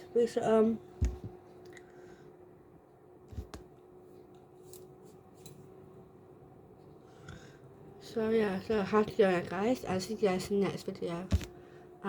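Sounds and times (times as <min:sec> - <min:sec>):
steady low hum: 0:00.0 - 0:12.0
soft thump: 0:01.0 - 0:01.4.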